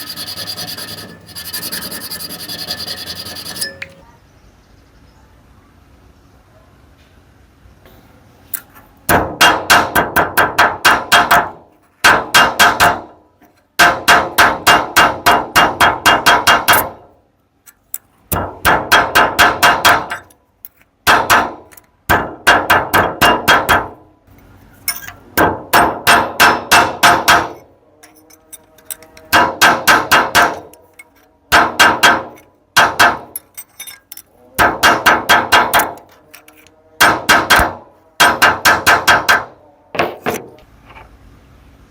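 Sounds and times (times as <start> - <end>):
hammer striking metal: 0.0 - 4.0, 18.3 - 20.3, 24.9 - 28.3, 28.9 - 34.0, 34.6 - 36.1, 37.0 - 40.5.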